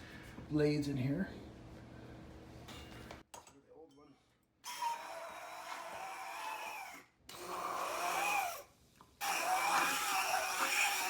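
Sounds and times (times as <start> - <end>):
immersion blender motor whine: 4.7 - 11.0.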